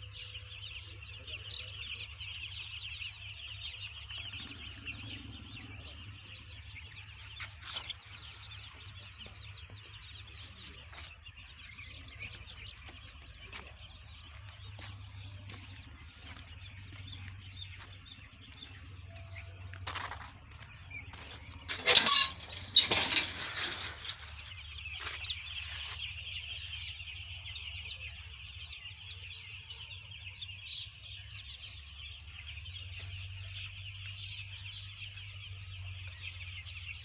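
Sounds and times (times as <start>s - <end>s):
chickens clucking: 0.0s - 37.0s.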